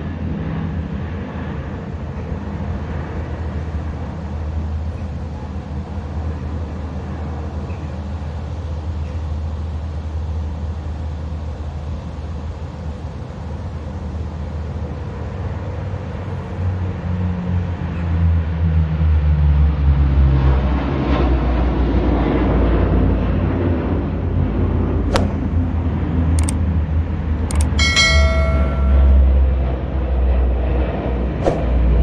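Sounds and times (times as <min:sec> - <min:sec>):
turboprop engines droning: 0:00.0 - 0:32.0.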